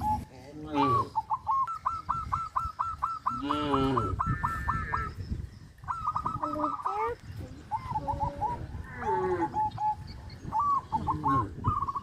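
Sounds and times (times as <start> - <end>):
low drawn-out animal call: 3.2 - 5.2, 8.0 - 9.9.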